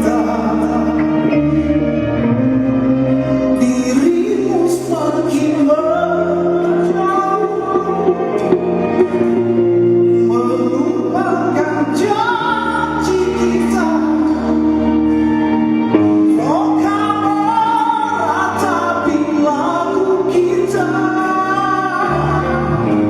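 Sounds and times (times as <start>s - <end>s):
person singing: 0.0s - 23.0s
rock band playing live: 0.0s - 23.0s.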